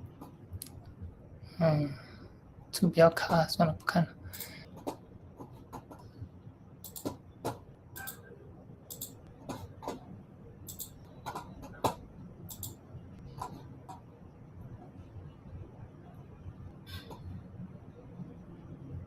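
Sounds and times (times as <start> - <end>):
computer mouse clicking: 6.8 - 8.3, 8.9 - 10.0, 10.7 - 14.0.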